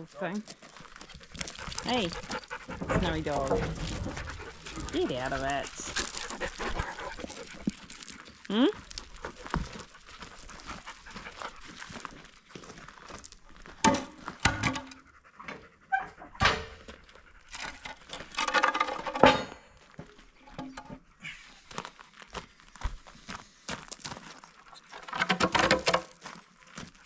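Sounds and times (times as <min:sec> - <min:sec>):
dog panting: 0:00.6 - 0:08.2, 0:09.1 - 0:12.8, 0:14.9 - 0:18.2.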